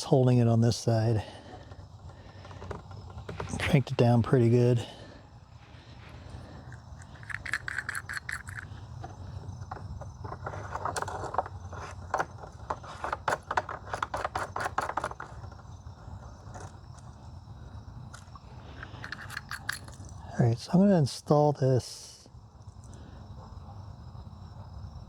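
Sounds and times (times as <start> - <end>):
scraping of small parts: 5.9 - 15.6, 18.2 - 20.2
clicks of small hard parts: 6.7 - 9.2, 18.2 - 20.1.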